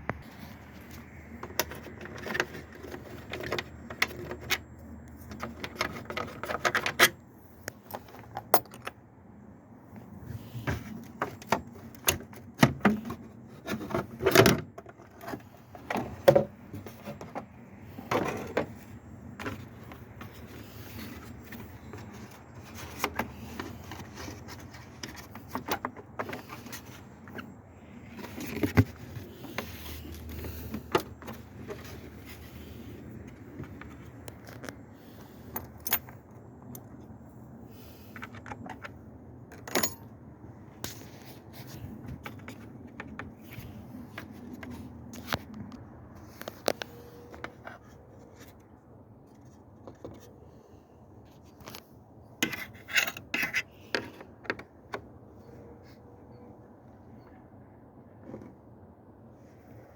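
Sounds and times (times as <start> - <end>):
hand tools clinking and scraping: 0.2 - 7.2, 10.4 - 37.0, 52.4 - 54.5.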